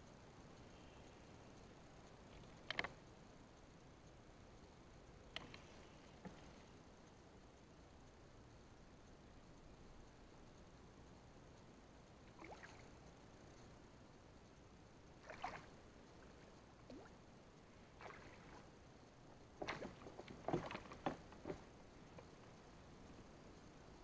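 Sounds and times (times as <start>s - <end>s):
water splashes: 12.4s - 12.9s, 15.2s - 15.8s, 16.9s - 17.2s, 17.9s - 18.7s, 19.6s - 21.2s.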